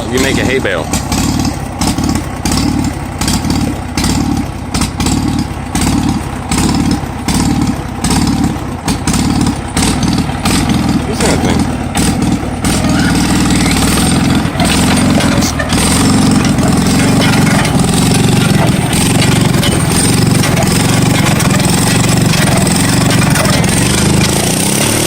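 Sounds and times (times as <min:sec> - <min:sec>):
baler mechanism knocking: 0:00.0 - 0:25.0
engine running under load: 0:00.0 - 0:25.0.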